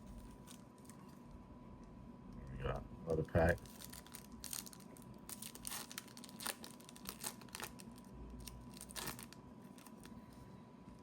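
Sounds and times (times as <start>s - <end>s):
foil wrapper tearing and crinkling: 3.6s - 10.2s.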